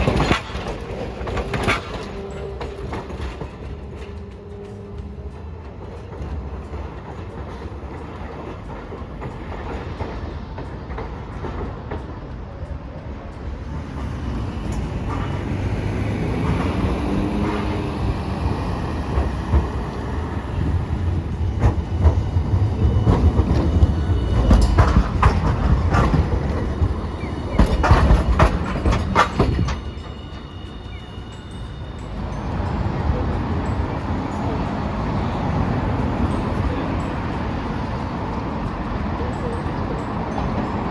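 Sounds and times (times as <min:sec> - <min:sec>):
streetcar passing: 0:00.0 - 0:40.9
wheels clacking over rail joints: 0:00.0 - 0:40.9.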